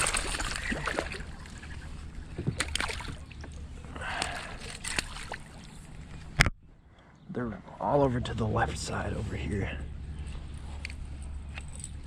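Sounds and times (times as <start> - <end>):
water splashing around kayak: 0.0 - 6.4.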